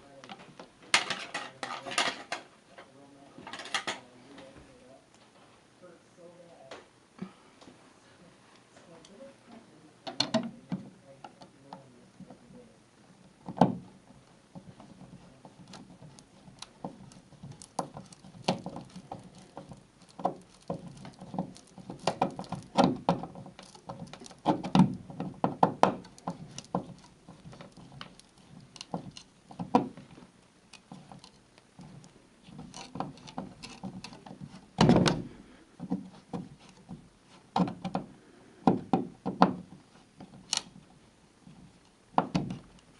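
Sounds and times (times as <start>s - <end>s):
heavy thud: 34.8s - 35.4s.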